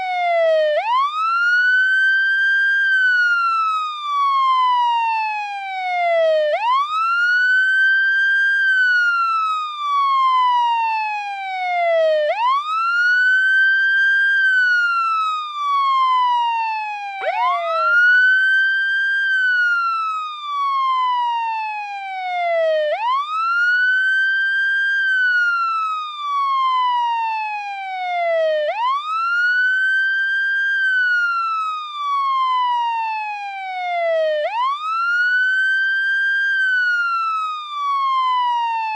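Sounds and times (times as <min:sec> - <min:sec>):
police siren wailing: 0:00.0 - 0:38.9.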